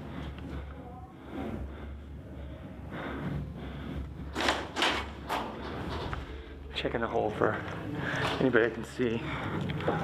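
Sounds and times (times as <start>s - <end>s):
person breathing hard: 0.0s - 4.7s, 7.8s - 8.4s, 9.1s - 10.0s.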